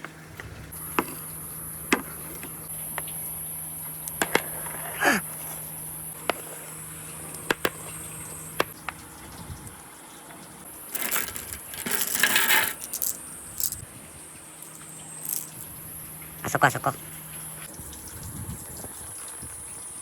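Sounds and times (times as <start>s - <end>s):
marbles and water rattling rush: 5.4s - 19.9s
glass marbles clicking: 10.8s - 13.8s, 14.6s - 15.8s.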